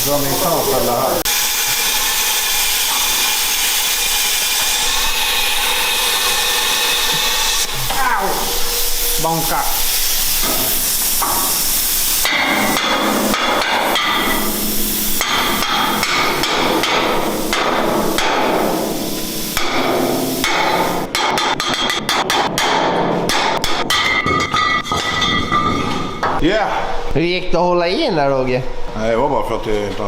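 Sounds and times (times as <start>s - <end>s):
hammer striking metal: 10.3s - 19.0s, 19.6s - 26.4s.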